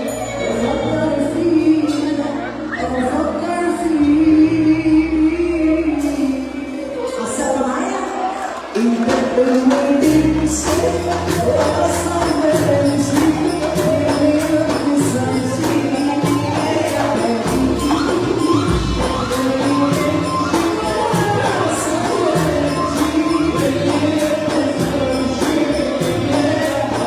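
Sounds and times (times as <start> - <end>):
person singing: 0.0 - 27.0
bass line: 10.0 - 27.0
tambourine jingling: 10.1 - 27.0.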